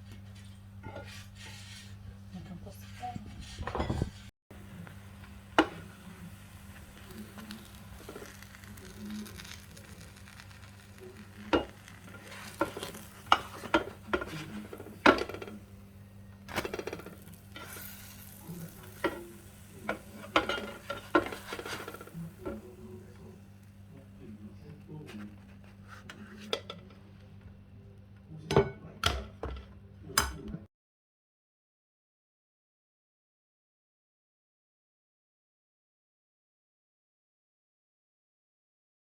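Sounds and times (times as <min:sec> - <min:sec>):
spatula scraping and tapping pan: 0:00.0 - 0:04.2, 0:05.5 - 0:06.1, 0:06.8 - 0:15.7, 0:16.5 - 0:23.3
batter sizzling in a frying pan: 0:04.6 - 0:24.1.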